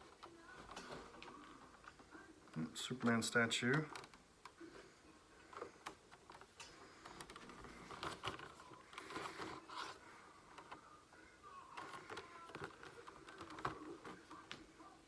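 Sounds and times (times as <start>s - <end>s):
packaging rustling and clicking: 5.6s - 10.0s.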